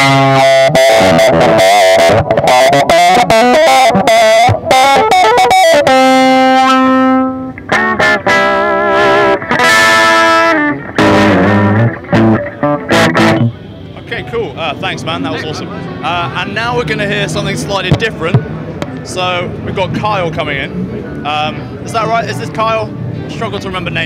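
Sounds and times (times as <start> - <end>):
overdriven electric guitar lead: 0.0 - 13.6.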